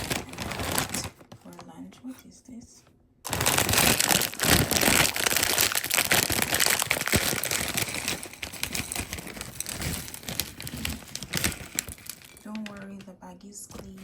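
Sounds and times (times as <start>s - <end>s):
plastic bag crinkling: 0.0s - 1.8s, 3.2s - 14.0s.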